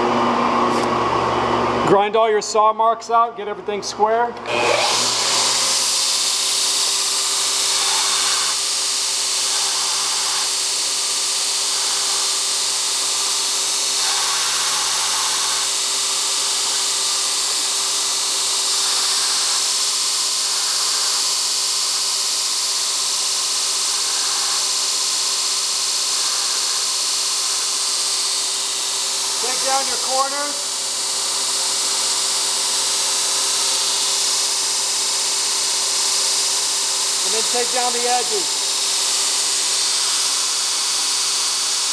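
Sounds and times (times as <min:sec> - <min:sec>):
grinder grinding metal: 0:04.4 - 0:41.9
motor hum: 0:27.4 - 0:35.6.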